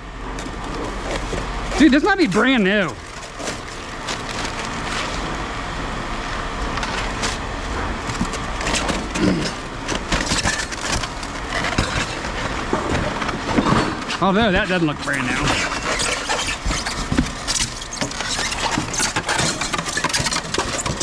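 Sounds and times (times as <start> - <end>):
cardboard box rustling: 0.4 - 5.4.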